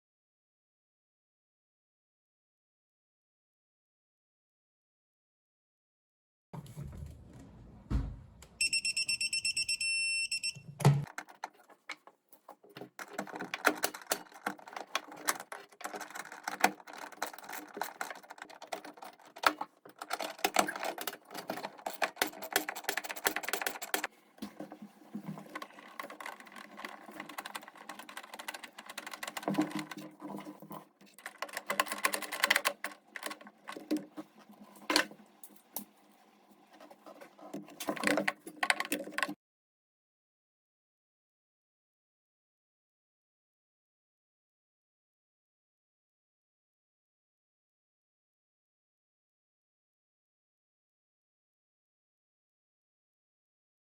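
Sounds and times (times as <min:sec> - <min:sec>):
high electronic beep: 0:08.6 - 0:10.6.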